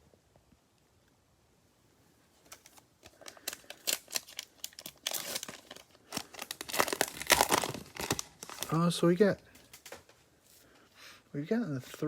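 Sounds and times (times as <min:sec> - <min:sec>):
foil wrapper crinkling and tearing: 0:02.4 - 0:09.0.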